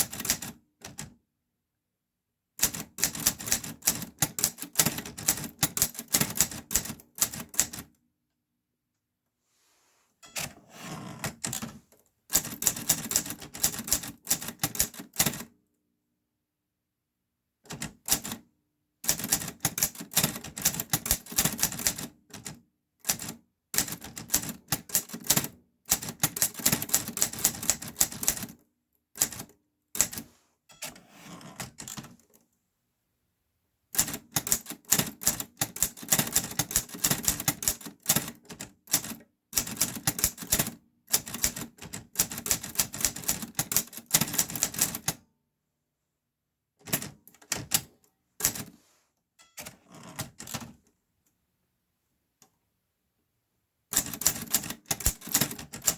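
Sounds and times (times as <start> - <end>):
typewriter keys striking: 12.3 - 15.4, 34.0 - 45.1, 54.0 - 55.9.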